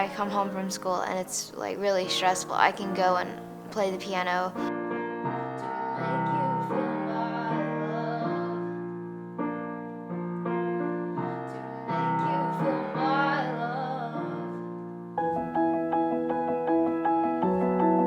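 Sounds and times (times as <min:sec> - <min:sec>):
woman singing: 0:00.0 - 0:04.7, 0:05.4 - 0:08.8, 0:11.1 - 0:14.7
piano chords: 0:00.0 - 0:18.0.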